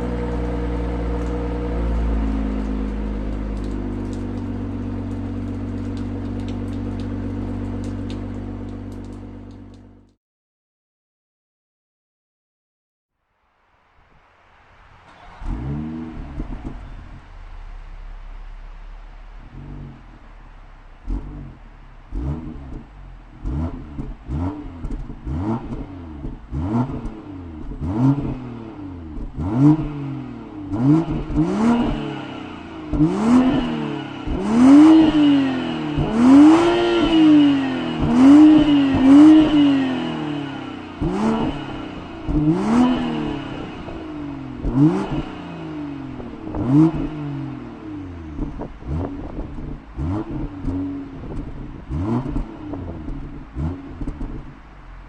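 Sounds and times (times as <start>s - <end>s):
car engine revving: 0.0s - 10.0s, 14.4s - 55.0s
exhaust cracks: 0.0s - 10.2s, 13.9s - 55.0s.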